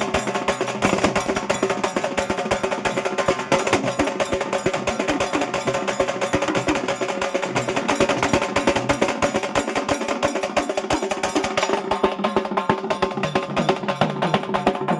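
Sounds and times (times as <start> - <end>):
frame drums beaten with sticks: 0.0 - 14.9.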